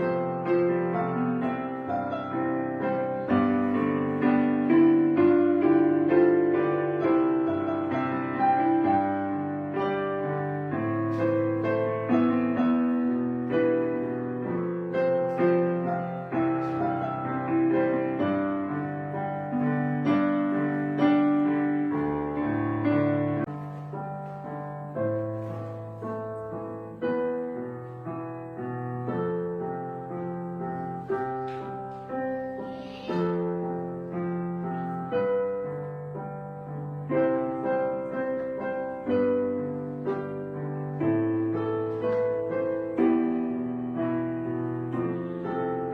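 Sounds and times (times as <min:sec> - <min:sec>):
gentle solo piano piece: 0:00.0 - 0:45.9.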